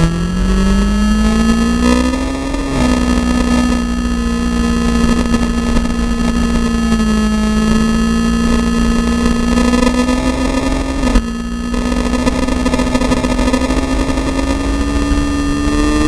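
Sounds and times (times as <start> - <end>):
racing engine at high revs: 0.0 - 16.0
wind and road rumble: 0.0 - 16.0.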